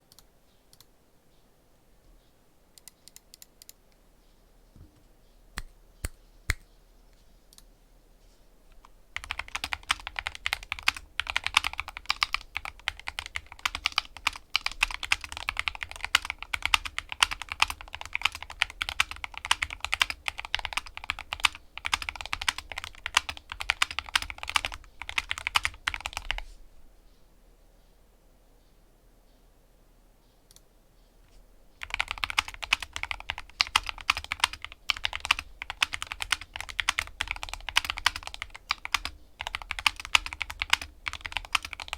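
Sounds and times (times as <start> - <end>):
typing on keyboard: 8.7 - 26.4, 31.8 - 41.9.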